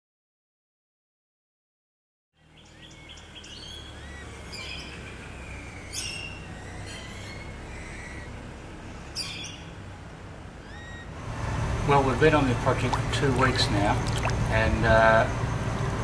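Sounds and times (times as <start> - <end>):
small birds chirping: 2.4 - 9.9, 10.6 - 11.2, 12.3 - 15.5.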